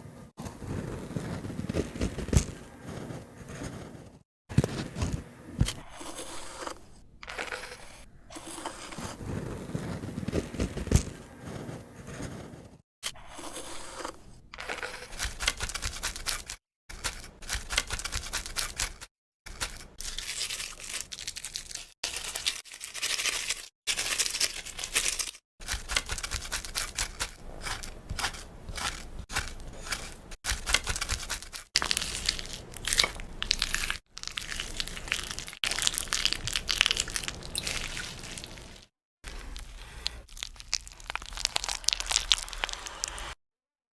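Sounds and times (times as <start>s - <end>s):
makeup crackling and crunching: 13.5s - 43.4s.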